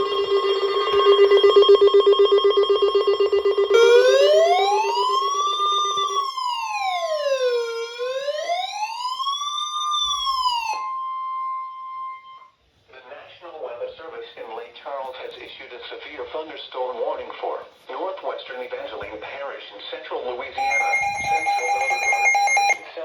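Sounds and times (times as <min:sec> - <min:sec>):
rapid buzzing alarm: 0:00.0 - 0:06.9, 0:20.6 - 0:22.8
steady warning alarm tone: 0:00.0 - 0:12.4, 0:20.6 - 0:22.9
electronic siren wailing: 0:00.0 - 0:12.5, 0:20.6 - 0:22.8.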